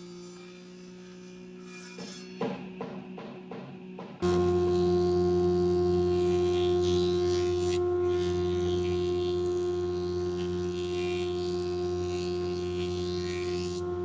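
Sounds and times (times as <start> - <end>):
power tool motor humming: 4.2 - 14.0.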